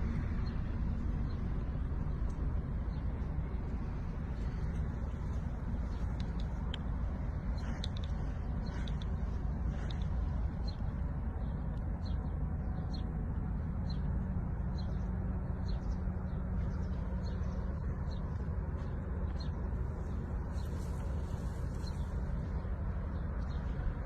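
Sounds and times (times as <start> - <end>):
steady low rumble: 0.0 - 24.0
small birds chirping: 7.5 - 13.0, 14.8 - 23.8.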